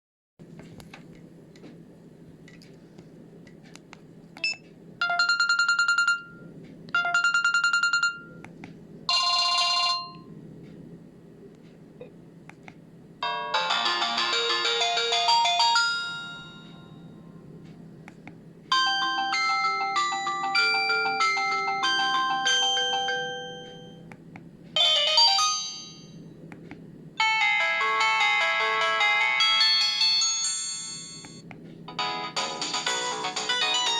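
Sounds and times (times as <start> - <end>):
phone ringtone: 5.0 - 6.4, 7.0 - 8.4, 9.1 - 10.3, 13.2 - 17.2, 18.7 - 24.1, 24.8 - 26.2, 27.2 - 31.4, 32.0 - 33.9
trilling electronic ringtone beep: 5.0 - 6.4, 7.0 - 8.4, 27.6 - 31.4.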